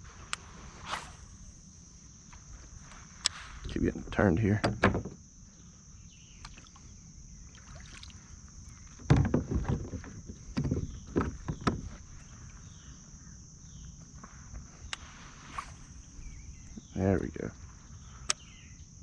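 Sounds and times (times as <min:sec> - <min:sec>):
faint high hiss: 0:00.0 - 0:04.3, 0:14.9 - 0:17.5
kayak paddle strokes in water: 0:15.0 - 0:16.2.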